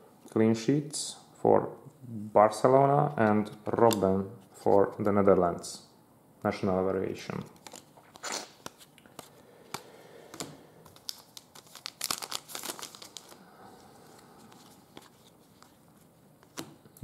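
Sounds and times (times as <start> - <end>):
packaging crinkling: 7.5 - 16.8.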